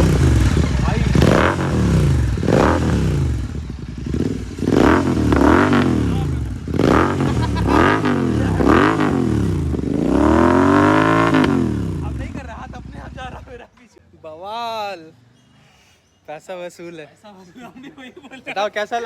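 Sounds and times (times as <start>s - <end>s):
motorcycle engine revving: 0.0s - 13.5s.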